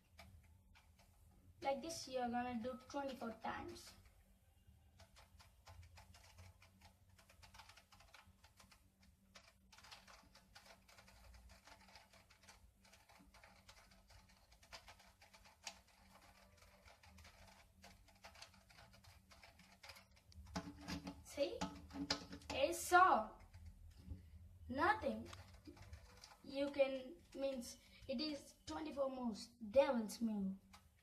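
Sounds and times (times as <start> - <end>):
plastic puzzle cube clicking: 5.0 - 22.6, 25.3 - 26.5.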